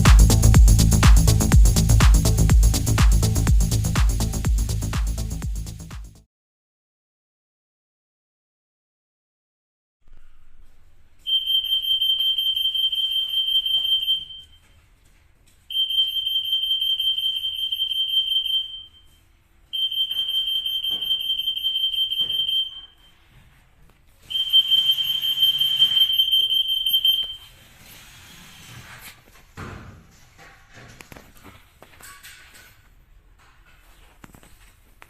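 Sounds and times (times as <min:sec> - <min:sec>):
anti-theft gate alarm tone: 0:11.3 - 0:14.7, 0:15.7 - 0:23.2, 0:24.3 - 0:27.6.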